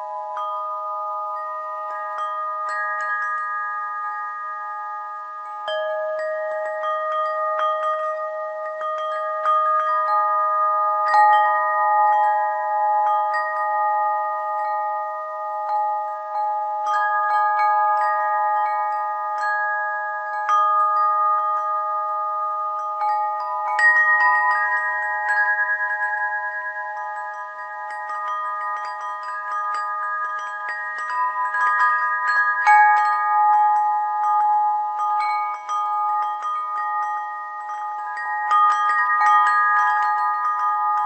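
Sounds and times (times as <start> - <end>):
high bell-like chimes: 0.0 - 41.0.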